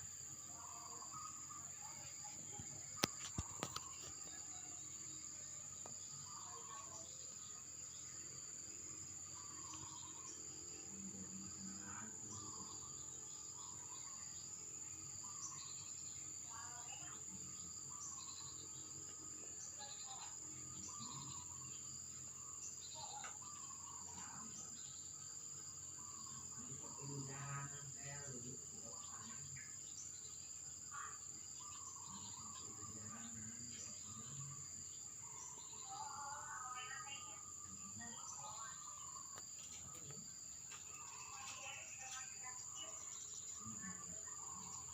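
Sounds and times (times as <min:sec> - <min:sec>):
crickets shrilling: 0:00.0 - 0:44.9
bird chirps and trills: 0:29.0 - 0:44.9.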